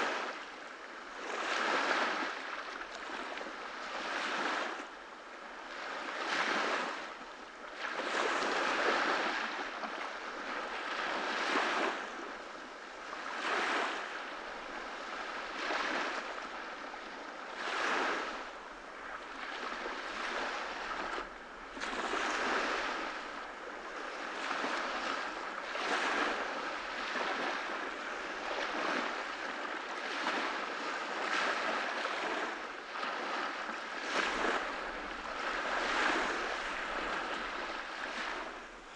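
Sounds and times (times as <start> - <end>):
ocean waves breaking on beach: 0.0 - 38.9.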